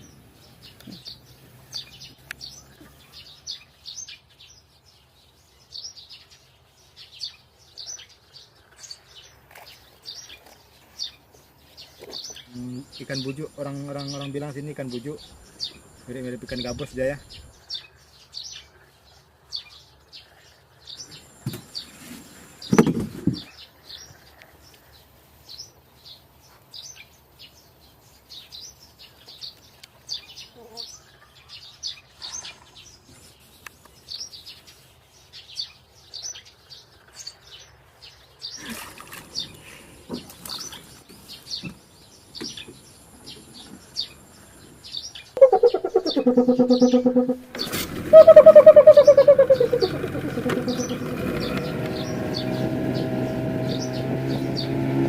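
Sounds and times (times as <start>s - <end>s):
small birds chirping: 0.0s - 55.0s.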